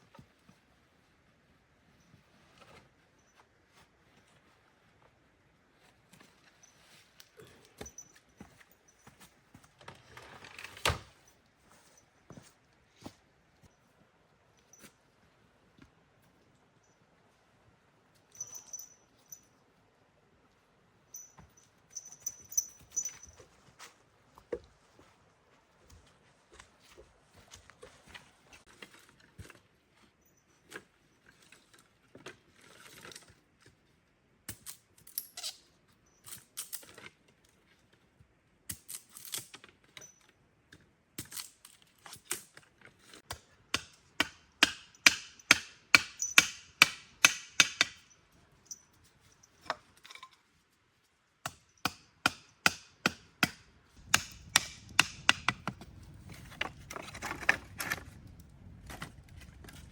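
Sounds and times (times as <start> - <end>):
chopping blows on wood: 51.5 - 55.8.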